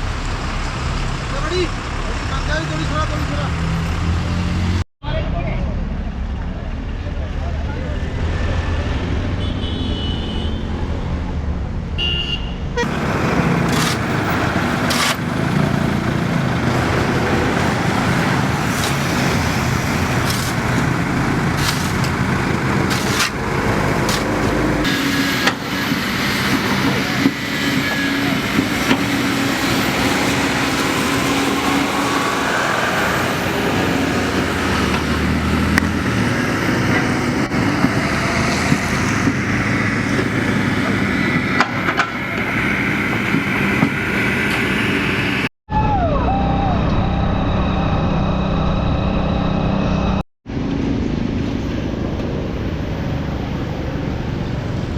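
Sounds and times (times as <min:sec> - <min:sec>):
traffic rumble: 0:00.0 - 0:54.9.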